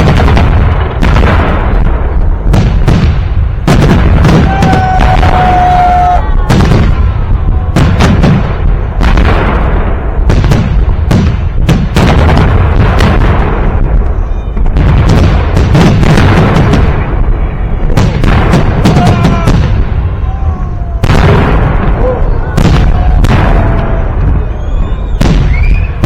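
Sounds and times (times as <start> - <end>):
fireworks bangs: 0.0 - 26.0
low rumble: 0.6 - 11.6
high whistle: 24.2 - 26.0.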